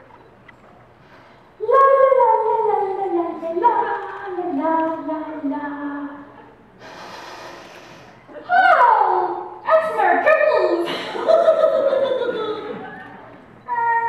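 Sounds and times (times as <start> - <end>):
short hiss: 6.8 - 8.2.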